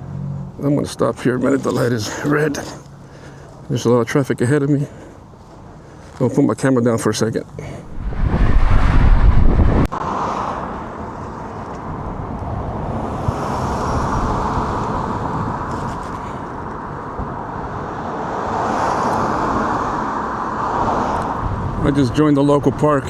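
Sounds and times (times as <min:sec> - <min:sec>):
traffic and road noise: 0:00.0 - 0:23.0
wind buffeting microphone: 0:07.8 - 0:10.0, 0:21.3 - 0:21.9.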